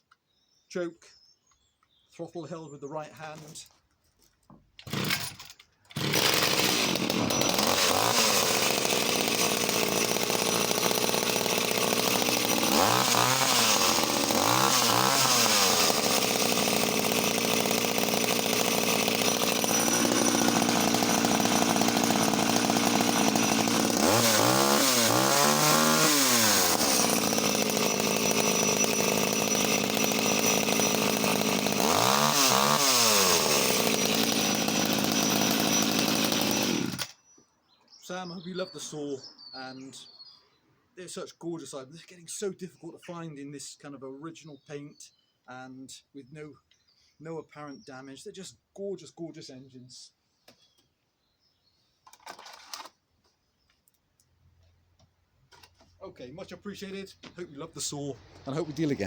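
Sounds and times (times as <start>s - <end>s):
chainsaw idling and revving: 4.8s - 37.2s, 52.1s - 52.9s.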